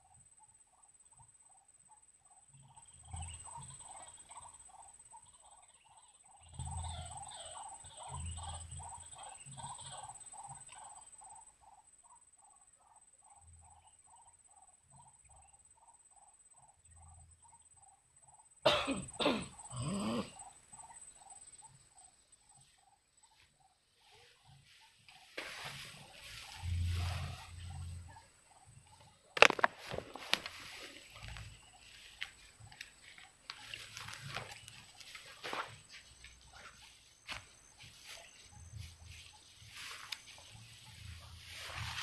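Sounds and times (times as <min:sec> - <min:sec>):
faint high-pitched whine: 0:18.6 - 0:42.0
rustling and knocking: 0:29.4 - 0:42.0.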